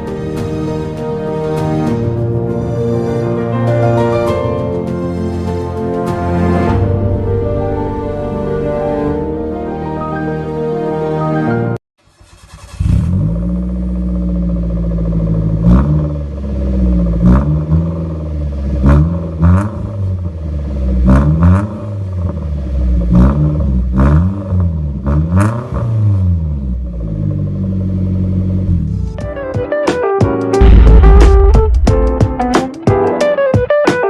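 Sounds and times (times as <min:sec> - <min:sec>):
small car engine revving: 0:12.0 - 0:29.1.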